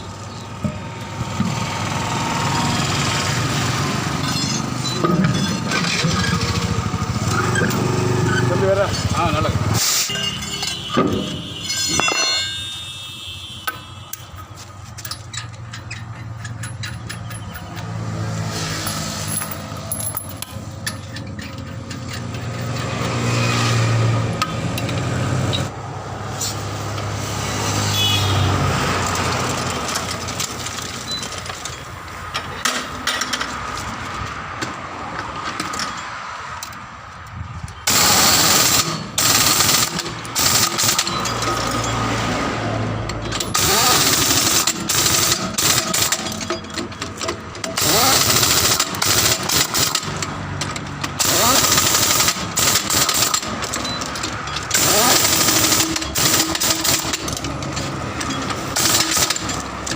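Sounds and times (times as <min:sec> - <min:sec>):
power tool grinding: 0:37.9 - 0:42.2, 0:43.4 - 0:46.4, 0:47.6 - 0:50.2, 0:51.2 - 0:59.9.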